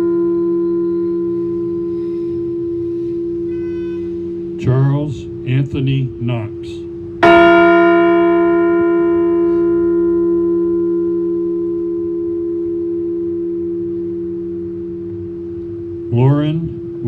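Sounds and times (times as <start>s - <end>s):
large bell ringing: 0.0s - 17.0s.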